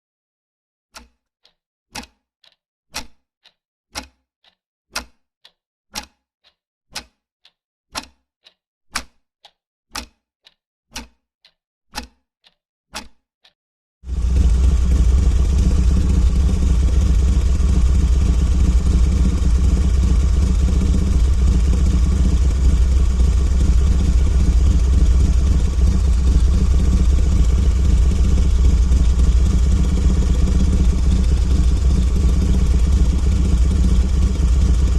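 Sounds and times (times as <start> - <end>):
motorcycle engine idling: 14.1 - 34.9.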